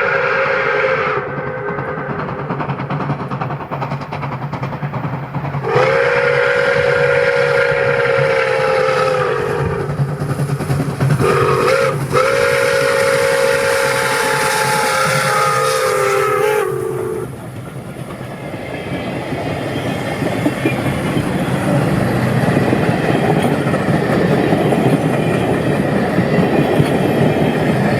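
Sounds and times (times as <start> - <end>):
steam whistle blasts: 0.0 - 2.1, 5.6 - 10.0, 11.2 - 17.3
steam locomotive rumbling: 0.0 - 27.9.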